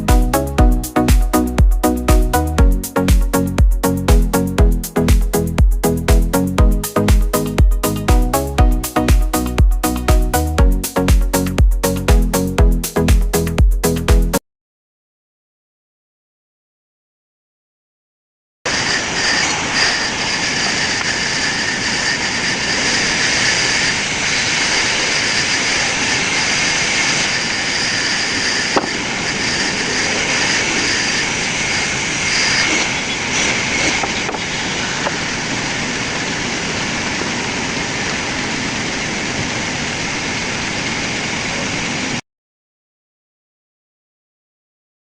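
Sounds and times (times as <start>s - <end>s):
saw cutting wood: 18.7s - 35.3s.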